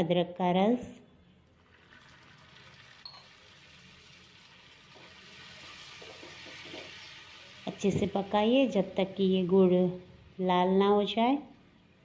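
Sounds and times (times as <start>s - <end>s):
sizzling in a hot pan: 1.6s - 10.8s.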